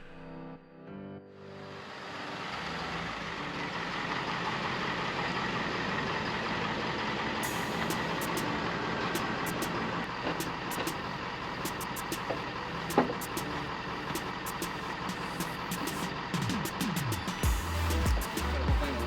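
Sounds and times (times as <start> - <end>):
vehicle engine and road noise: 1.7 - 19.0.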